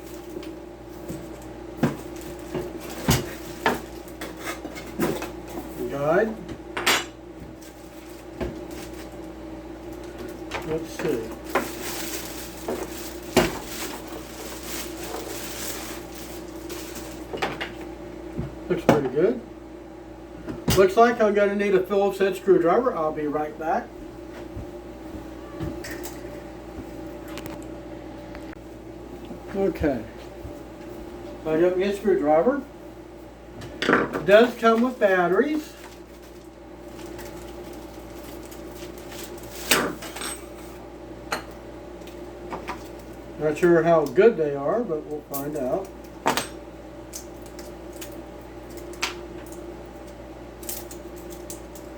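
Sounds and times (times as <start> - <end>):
steady low hum: 0.0 - 51.9
packaging rustling: 10.3 - 17.3, 34.3 - 39.8.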